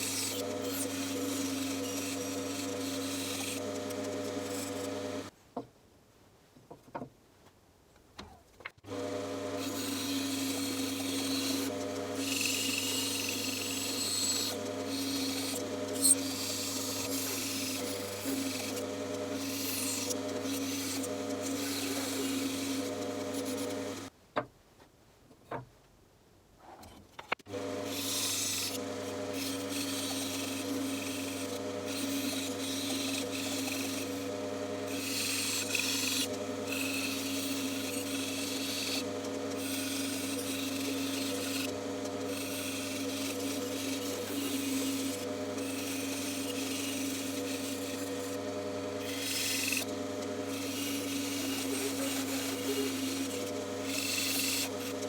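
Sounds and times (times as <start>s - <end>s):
bandsaw cutting wood: 0.0s - 5.3s, 8.8s - 24.1s, 27.5s - 55.0s.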